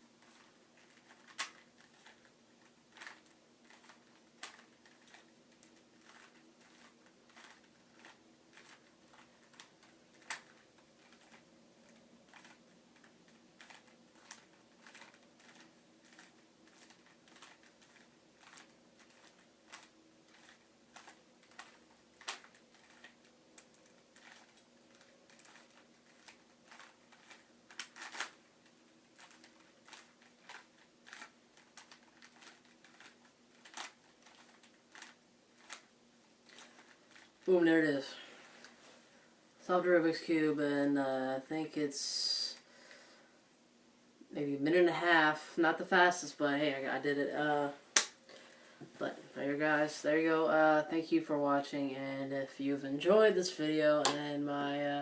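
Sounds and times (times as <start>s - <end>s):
puzzle cube plastic clicks: 0.2s - 37.4s.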